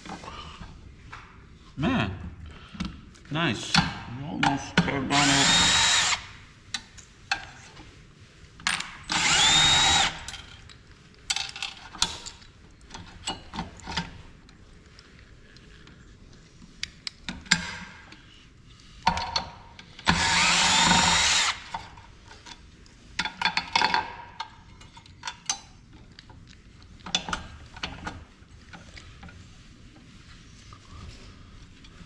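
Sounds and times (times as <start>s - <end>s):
handheld power tool running: 5.1s - 6.3s, 9.1s - 10.3s, 20.0s - 21.8s.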